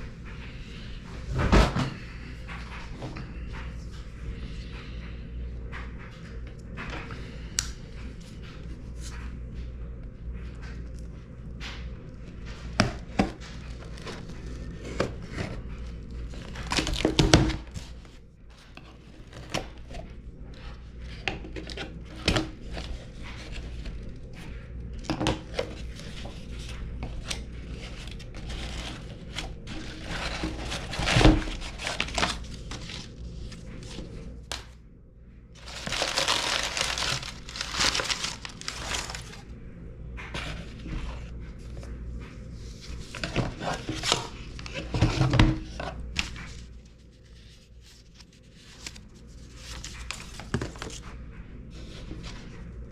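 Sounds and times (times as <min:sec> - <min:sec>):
plastic crinkling: 0:13.5 - 0:18.0, 0:25.6 - 0:34.2, 0:35.6 - 0:39.4.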